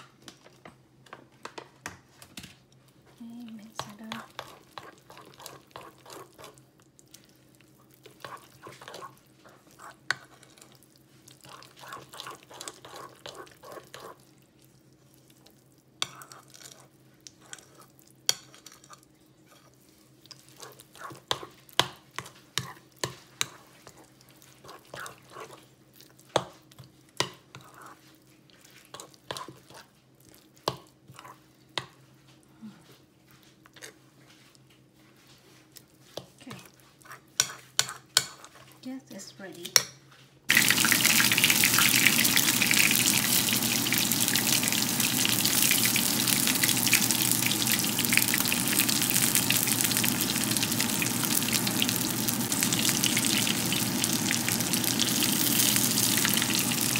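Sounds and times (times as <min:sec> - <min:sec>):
wet batter squelching: 0:03.2 - 0:38.8.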